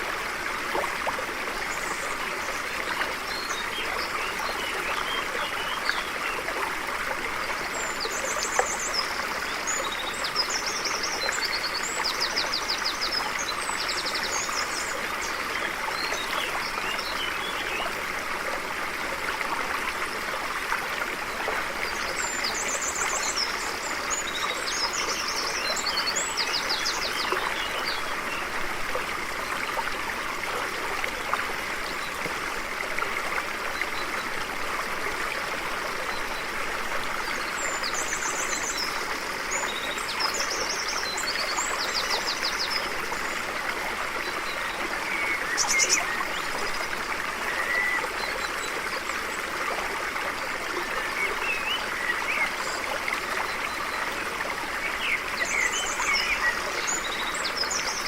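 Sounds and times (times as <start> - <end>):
stream flowing over rocks: 0.0 - 58.0.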